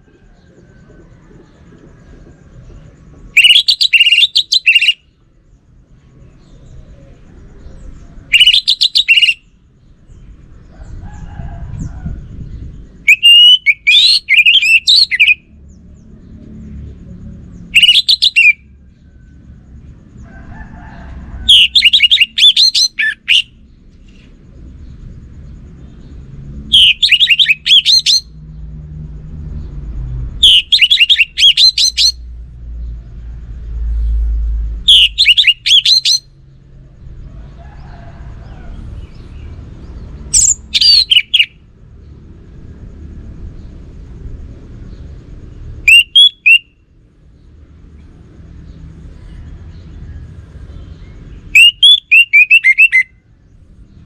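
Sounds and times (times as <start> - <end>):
thrush singing whistled phrases: 3.3 - 5.0, 8.3 - 9.5, 13.0 - 15.5, 17.7 - 18.6, 21.5 - 23.6, 26.7 - 28.3, 30.4 - 32.2, 34.9 - 36.3, 40.3 - 41.6, 45.8 - 46.9, 51.5 - 53.2
low rumble: 9.7 - 13.1.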